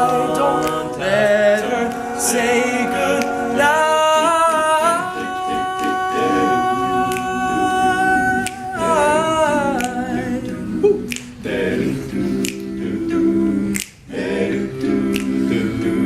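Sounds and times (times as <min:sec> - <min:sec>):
male a cappella group singing: 0:00.0 - 0:16.0
finger snaps: 0:00.1 - 0:01.0, 0:03.1 - 0:03.5, 0:07.0 - 0:07.4, 0:08.3 - 0:08.9, 0:09.7 - 0:12.8, 0:13.6 - 0:14.1, 0:14.8 - 0:15.6.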